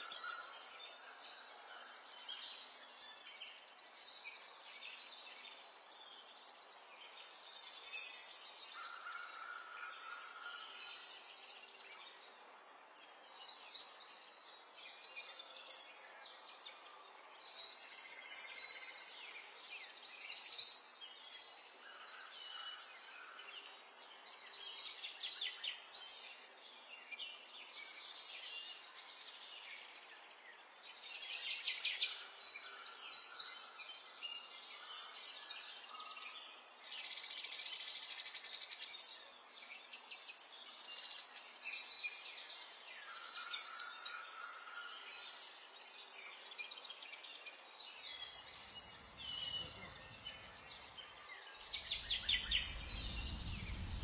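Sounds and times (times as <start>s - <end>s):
songbirds chirping and trilling: 40.2s - 54.0s
low rumble: 51.8s - 54.0s.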